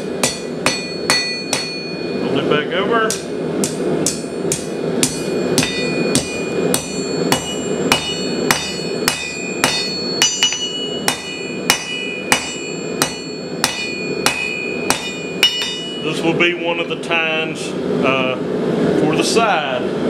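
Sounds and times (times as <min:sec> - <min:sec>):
hammer striking steel on anvil: 0:00.0 - 0:02.2, 0:03.1 - 0:16.2.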